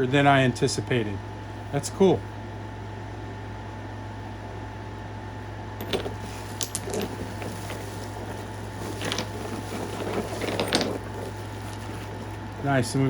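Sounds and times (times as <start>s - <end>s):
stones clicking and scraping: 5.8s - 12.4s.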